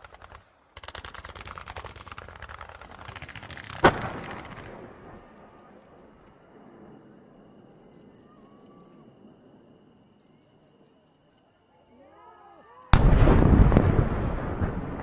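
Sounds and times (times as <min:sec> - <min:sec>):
fireworks crackling: 0:00.0 - 0:06.2, 0:12.9 - 0:15.0
insects chirping in pulses: 0:03.2 - 0:15.0
loud firework bang: 0:03.8 - 0:04.8, 0:13.0 - 0:15.0.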